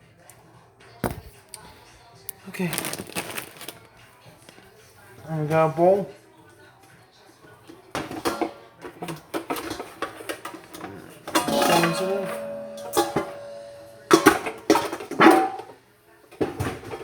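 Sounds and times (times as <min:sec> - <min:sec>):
dishes clattering: 0:07.9 - 0:15.8, 0:16.4 - 0:17.0
ringing tone: 0:11.5 - 0:14.3.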